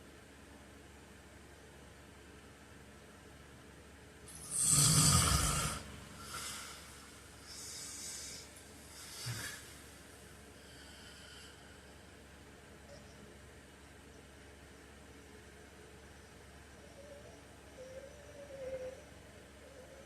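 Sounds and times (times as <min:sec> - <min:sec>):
man snoring: 0:04.3 - 0:09.8
quiet breaths: 0:04.3 - 0:13.2.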